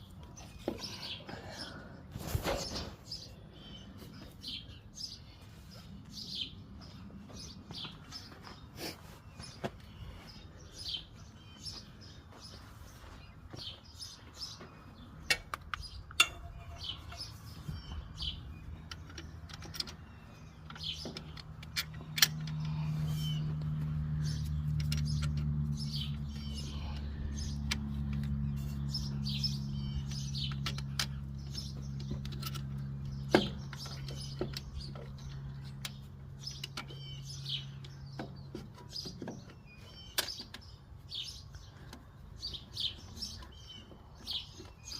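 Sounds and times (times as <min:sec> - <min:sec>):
low engine-like hum: 0:00.0 - 0:44.9
small birds chirping: 0:00.0 - 0:44.9
sharp clicks and knocks: 0:15.2 - 0:22.8, 0:24.7 - 0:26.4, 0:30.1 - 0:37.0.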